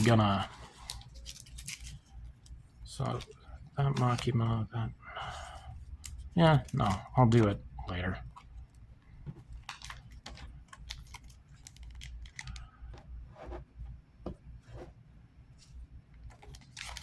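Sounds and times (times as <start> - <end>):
cards clicking and rustling: 0.0 - 4.4, 5.3 - 7.6, 9.5 - 13.1, 16.2 - 17.0.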